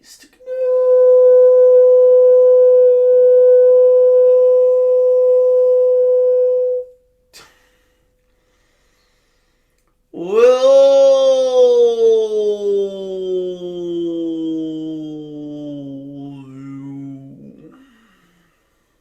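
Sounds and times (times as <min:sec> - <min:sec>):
faint click: 0:09.7 - 0:10.0
man singing breathy tone: 0:12.9 - 0:18.7.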